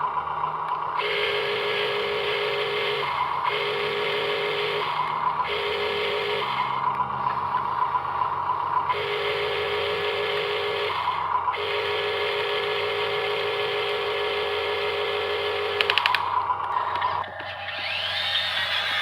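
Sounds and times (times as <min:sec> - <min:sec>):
electric motor whining: 0:09.0 - 0:19.0
quick clicks: 0:15.8 - 0:17.6.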